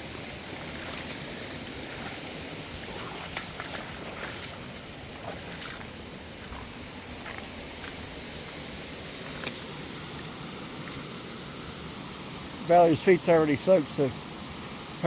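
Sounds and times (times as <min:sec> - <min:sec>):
mountain creek rushing: 0:00.0 - 0:15.0.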